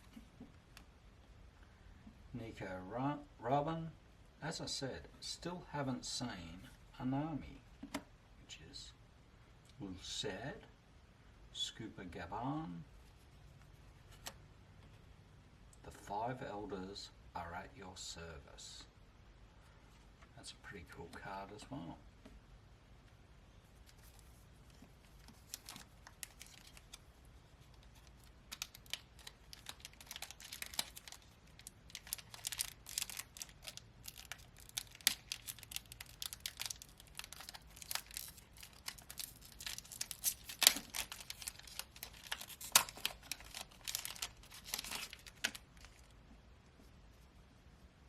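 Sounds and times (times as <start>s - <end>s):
foil wrapper crinkling and tearing: 23.8s - 46.1s.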